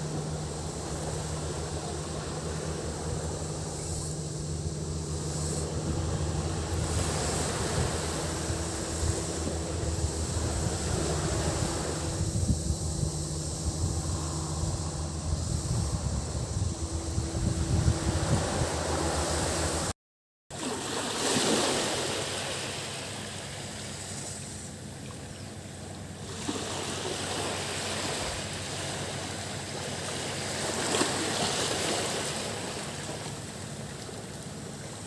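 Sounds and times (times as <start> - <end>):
waves washing onto beach: 0.0 - 12.4, 20.5 - 35.0
cicadas droning: 0.0 - 19.9, 20.6 - 35.0
wind buffeting microphone: 0.0 - 19.9.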